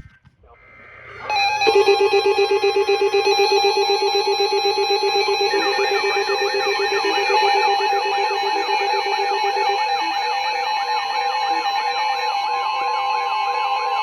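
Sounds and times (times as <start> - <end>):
steady alarm tone: 1.2 - 14.0
warbling siren-like sweep: 1.2 - 14.0
rapid pulsing beep: 1.3 - 12.7.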